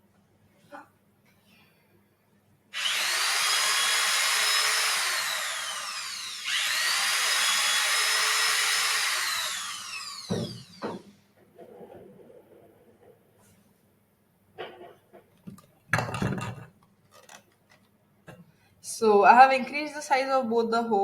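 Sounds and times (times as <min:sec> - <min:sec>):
electric drill whining: 0:02.8 - 0:11.2.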